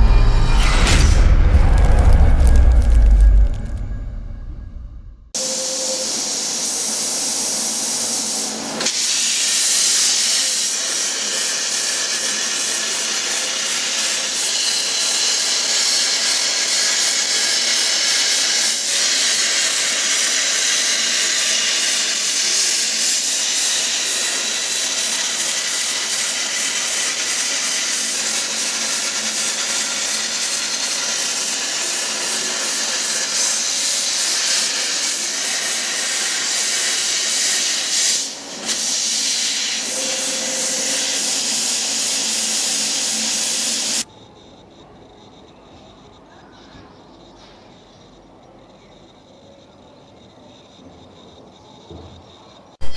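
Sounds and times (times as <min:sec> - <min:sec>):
plasma cutter hissing: 0:05.4 - 0:44.1.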